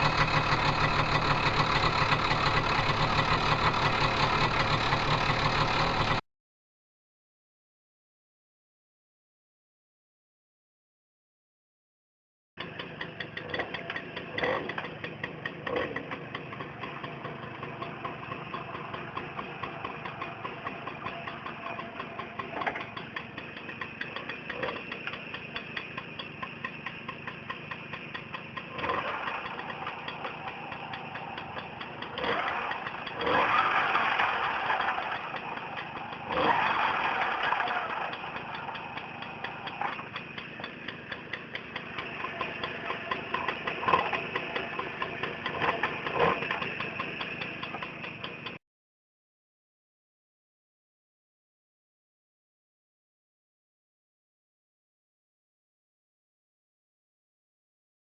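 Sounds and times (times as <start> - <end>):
moped engine idling and revving: 0.0 - 6.2, 12.6 - 48.6.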